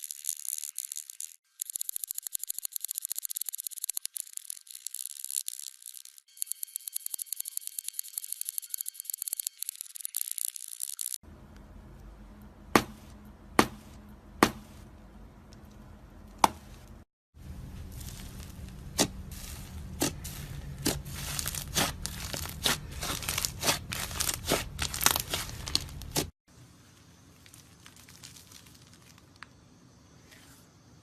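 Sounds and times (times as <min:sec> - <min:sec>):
slime popping and crackling: 0:17.9 - 0:26.3.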